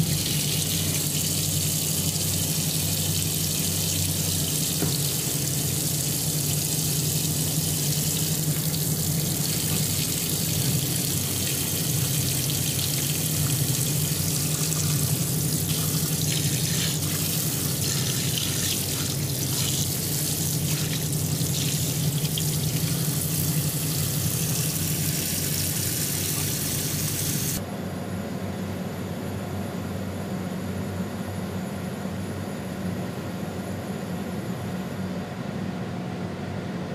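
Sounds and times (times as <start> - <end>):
coolant spray rushing: 0.0 - 27.6
machine hum: 0.0 - 35.6.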